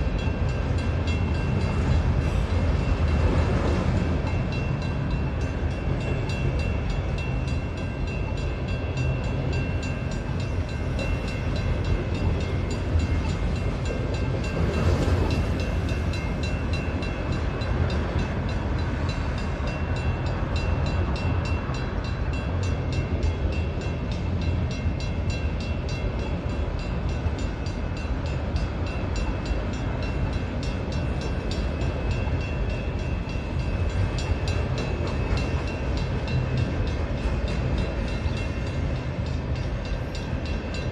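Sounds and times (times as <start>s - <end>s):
train wheels rumbling on rails: 0.0s - 40.9s.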